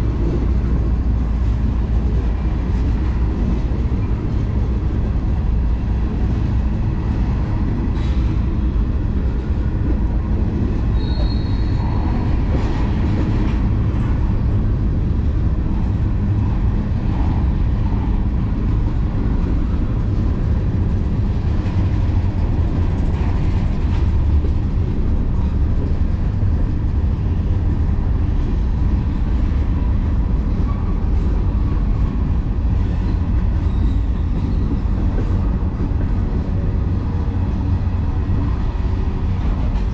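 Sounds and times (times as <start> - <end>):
freight train wheels rumbling: 0.0 - 39.9
high wheel squeal: 10.9 - 12.0.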